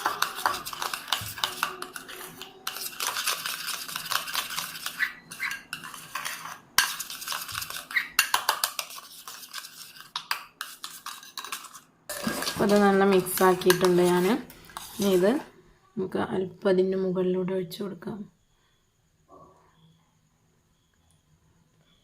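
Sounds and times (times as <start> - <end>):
spoon clinking in a cup: 0.0 - 14.1.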